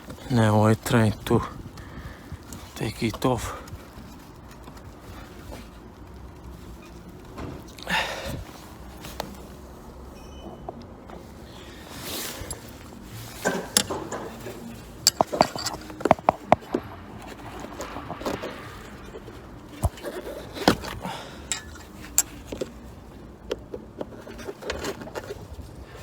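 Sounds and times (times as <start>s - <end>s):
tool scraping plastic: 11.9s - 22.8s, 23.5s - 26.0s
sharp clicks and knocks: 13.4s - 22.7s.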